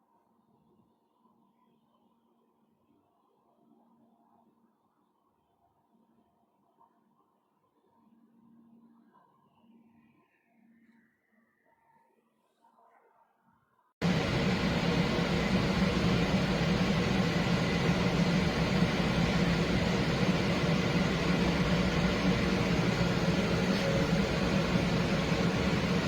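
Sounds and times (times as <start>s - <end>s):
electric fan running: 14.0s - 26.0s.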